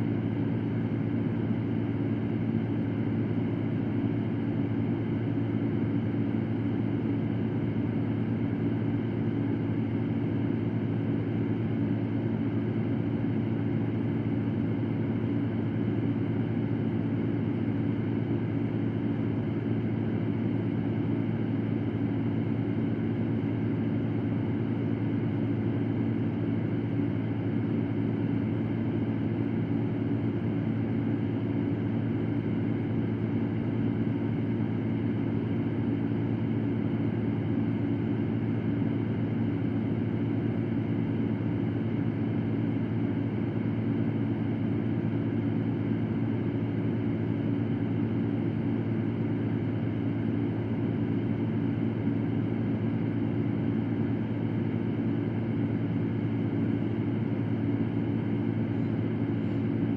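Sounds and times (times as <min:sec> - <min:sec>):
electric fan humming: 0:54.5 - 0:59.9.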